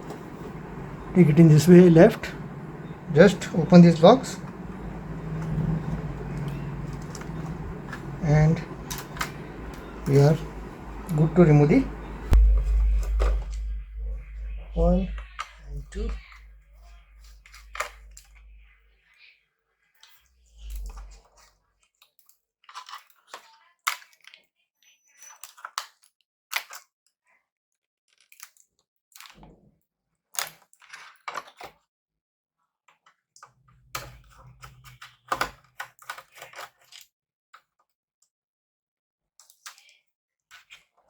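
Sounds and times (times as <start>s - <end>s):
dull thump: 12.0s - 16.4s.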